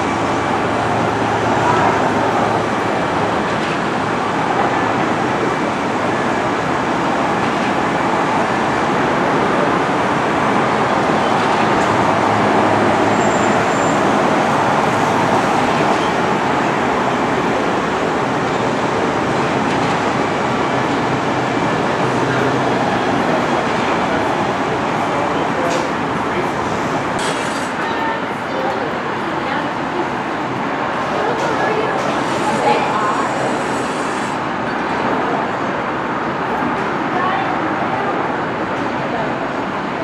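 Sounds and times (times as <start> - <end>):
train rolling: 0.0 - 40.0.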